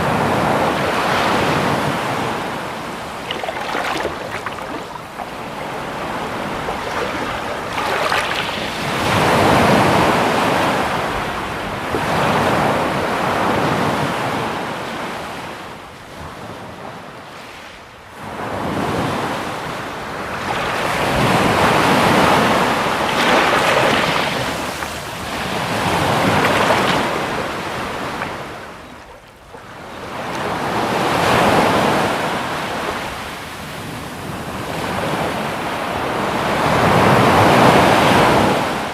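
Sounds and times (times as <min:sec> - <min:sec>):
sea waves breaking on shore: 0:00.0 - 0:38.9.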